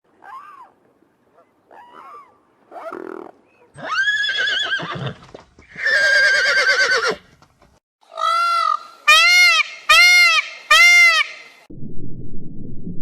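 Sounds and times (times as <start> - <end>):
horse whinnying: 3.8 - 7.3.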